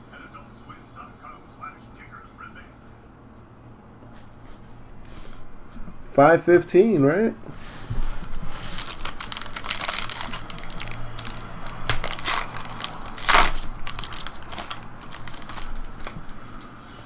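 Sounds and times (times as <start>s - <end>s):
plastic wrapper tearing and crinkling: 8.6s - 16.5s.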